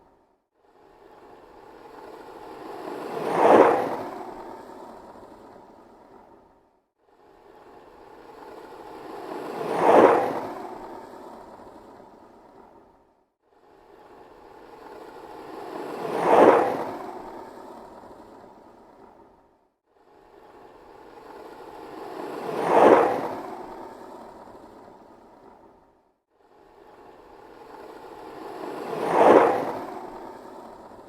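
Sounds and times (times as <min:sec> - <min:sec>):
skateboard rolling past: 0:01.5 - 0:06.4, 0:07.6 - 0:12.8, 0:14.6 - 0:19.2, 0:20.9 - 0:25.8, 0:26.8 - 0:31.0.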